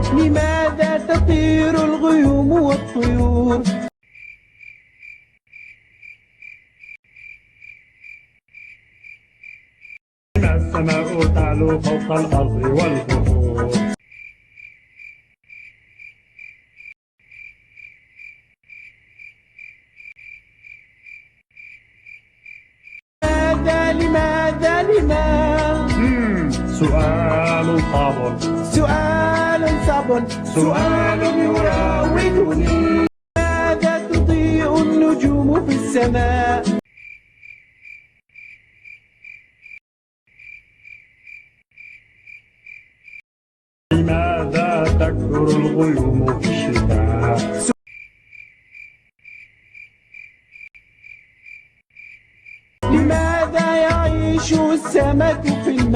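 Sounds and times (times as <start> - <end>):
cricket chirping: 4.0 - 10.0, 14.0 - 23.0, 36.9 - 43.2, 47.9 - 52.8.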